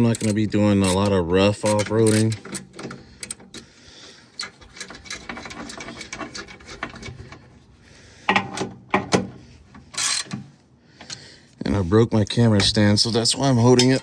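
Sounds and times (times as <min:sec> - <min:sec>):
ratchet wrench clicking: 0:00.0 - 0:03.4
metal tools knocking: 0:00.0 - 0:03.6, 0:13.4 - 0:14.0.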